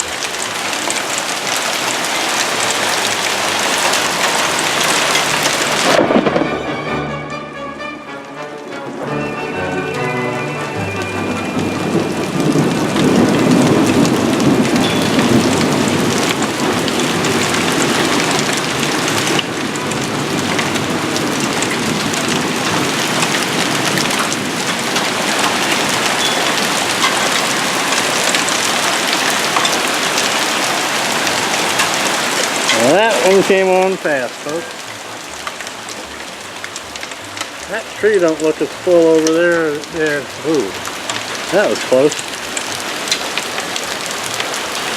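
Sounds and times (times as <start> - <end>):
hailstones hitting: 0.0 - 6.8, 9.8 - 44.9
heavy rain: 0.0 - 44.9
thunder rumble: 4.0 - 7.0, 10.7 - 28.8.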